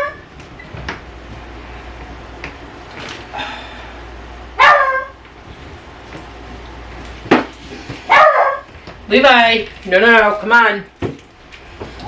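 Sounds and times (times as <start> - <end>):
dog barking: 4.6 - 5.2, 8.1 - 8.7.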